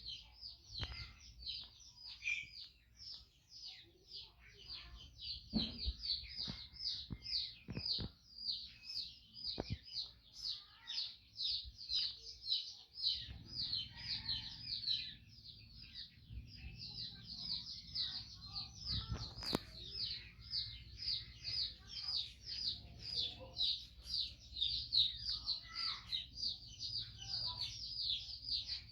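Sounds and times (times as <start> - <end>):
small bird chirping: 0.0 - 28.9.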